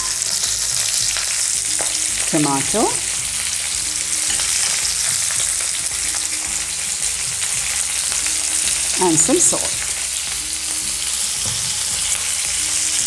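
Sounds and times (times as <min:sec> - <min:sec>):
vegetables sizzling in hot oil: 0:00.0 - 0:13.0.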